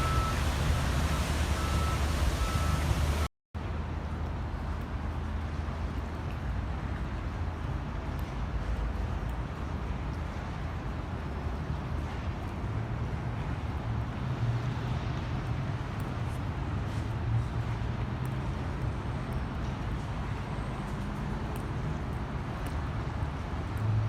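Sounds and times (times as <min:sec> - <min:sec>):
passing engine hum: 0:00.0 - 0:03.3
traffic rumble: 0:00.0 - 0:05.9.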